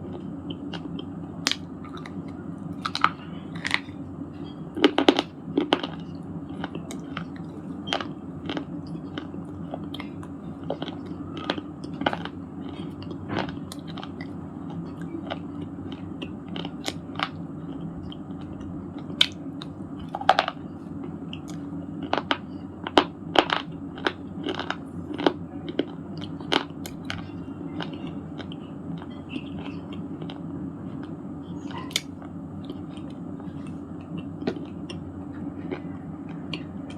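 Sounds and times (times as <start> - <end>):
steady low hum: 0.0 - 36.9.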